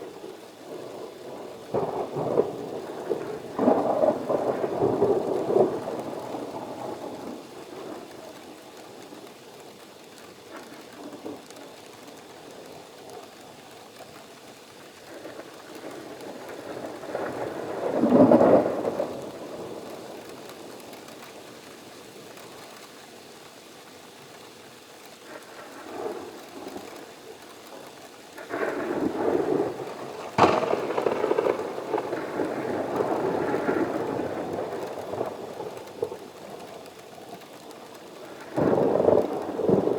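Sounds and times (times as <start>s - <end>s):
rolling thunder: 0.0s - 8.2s, 15.1s - 22.1s, 28.4s - 36.8s, 38.1s - 39.9s
steady rain: 0.0s - 39.9s
sharp crack of thunder: 0.1s - 8.2s, 15.1s - 21.7s, 28.3s - 36.7s, 38.4s - 39.9s.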